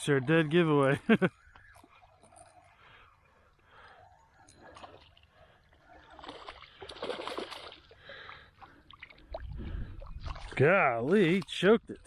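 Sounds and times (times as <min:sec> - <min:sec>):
fish splashing in water: 0:04.6 - 0:10.6.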